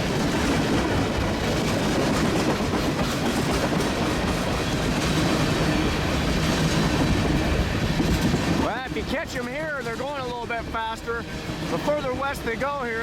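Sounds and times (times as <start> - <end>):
train wheels rolling on rails: 0.0 - 13.0.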